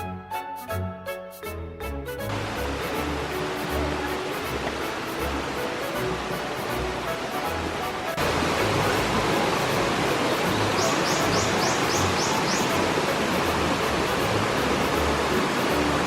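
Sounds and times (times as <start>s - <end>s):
background music: 0.0s - 16.0s
stream and waterfall rushing: 2.3s - 16.0s
high chirps: 10.4s - 12.9s.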